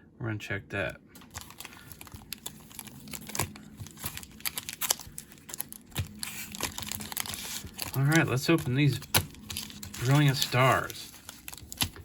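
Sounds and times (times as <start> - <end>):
packaging crinkling and rustling: 1.2 - 12.0
cards clicking and tapping: 3.3 - 12.0.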